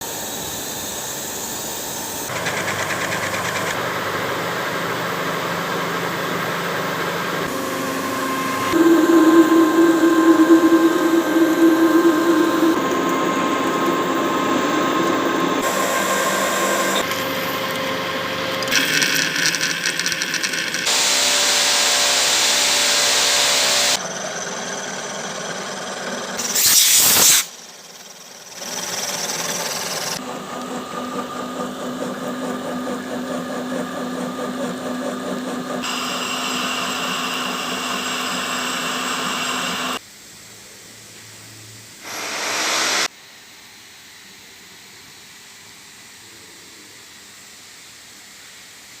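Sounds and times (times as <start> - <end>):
metal lathe cutting: 2.3 - 40.0, 42.0 - 43.1
loud hiss: 20.8 - 24.0, 26.4 - 27.6, 42.0 - 43.6.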